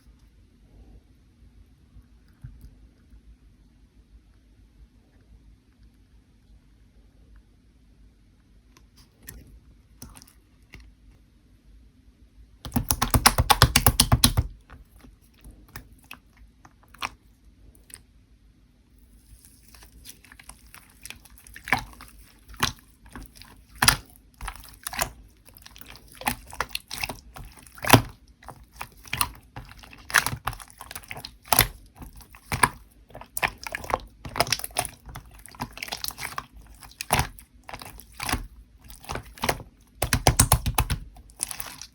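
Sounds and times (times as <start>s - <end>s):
slime clicking and popping: 12.7s - 14.6s, 20.6s - 41.9s.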